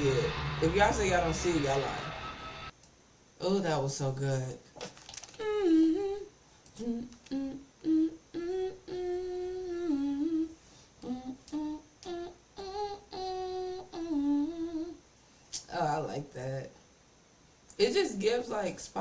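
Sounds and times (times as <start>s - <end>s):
person humming a melody: 5.4s - 15.0s.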